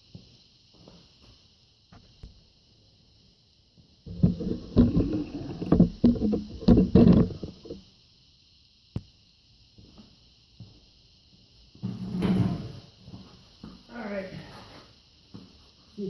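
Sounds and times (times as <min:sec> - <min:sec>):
exhaust parts knocking and scraping: 0:04.1 - 0:07.9.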